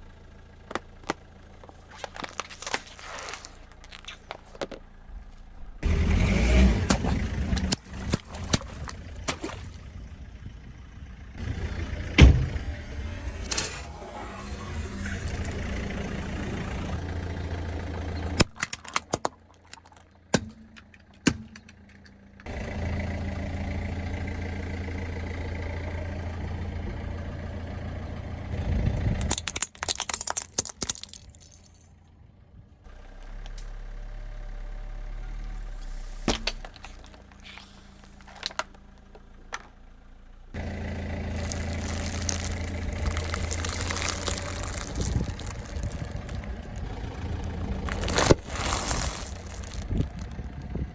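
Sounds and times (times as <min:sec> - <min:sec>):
car engine running: 0:00.0 - 0:02.8, 0:03.6 - 0:50.9
objects crushed under tyres: 0:18.4 - 0:21.9, 0:29.2 - 0:31.8, 0:41.2 - 0:50.8.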